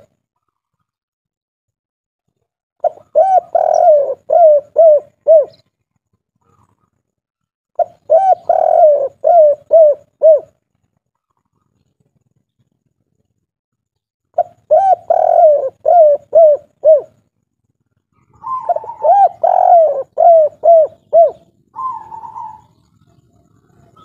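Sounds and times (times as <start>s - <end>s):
dove cooing: 2.8s - 5.7s, 7.8s - 10.6s, 14.4s - 17.2s, 18.1s - 24.0s.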